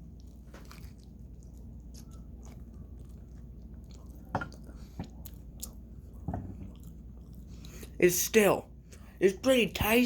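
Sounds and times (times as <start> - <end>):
person chewing food: 0.0 - 8.0
low steady hum: 0.0 - 10.0.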